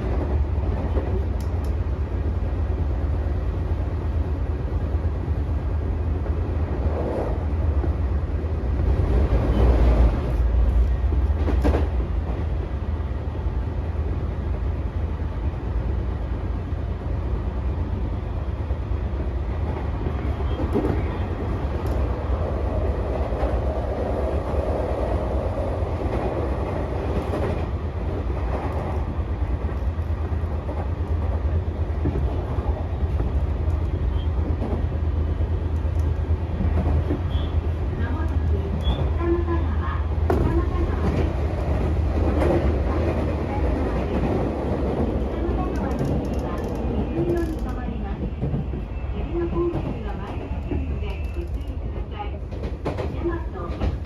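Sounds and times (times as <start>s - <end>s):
train wheels rumbling on rail: 0.0s - 54.0s.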